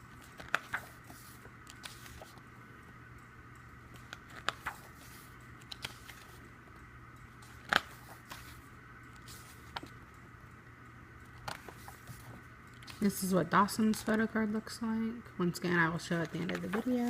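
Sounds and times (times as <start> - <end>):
faint steady hum: 0.0 - 17.0
paper and plastic rustling: 16.1 - 17.0.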